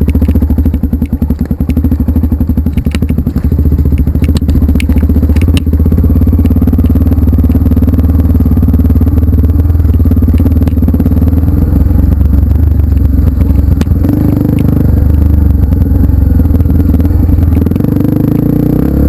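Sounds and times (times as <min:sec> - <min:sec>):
motorcycle engine running: 0:00.0 - 0:19.0
sharp click: 0:02.7 - 0:05.8.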